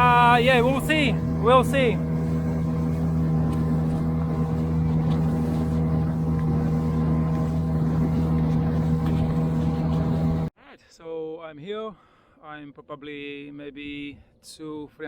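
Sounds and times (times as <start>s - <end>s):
outboard motor running: 0.0s - 10.5s.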